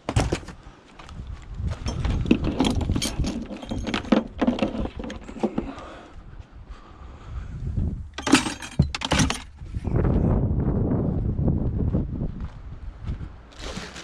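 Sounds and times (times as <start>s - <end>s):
scrap metal knocking and rattling: 1.8s - 5.9s, 8.1s - 9.7s.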